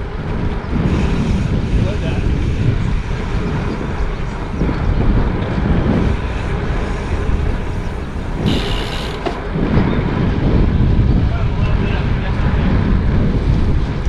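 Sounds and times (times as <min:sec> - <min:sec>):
wind buffeting microphone: 0:00.0 - 0:14.0.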